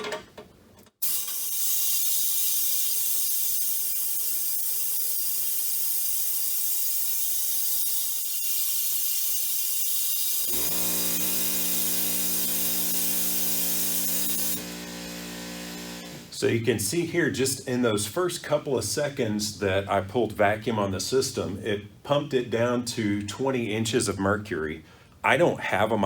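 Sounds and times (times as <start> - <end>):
vacuum pump hissing: 10.3 - 16.4
air compressor humming: 10.4 - 16.4.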